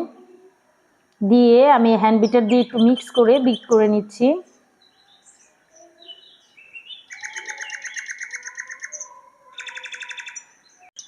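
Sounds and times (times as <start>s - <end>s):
small birds chirping: 0.0s - 11.0s
rapid trilled bird calls: 2.2s - 3.9s, 4.8s - 11.0s.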